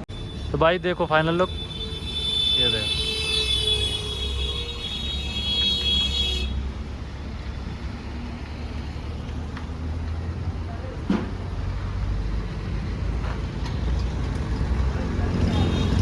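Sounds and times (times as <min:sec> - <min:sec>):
tractor engine rumbling: 0:00.0 - 0:16.0.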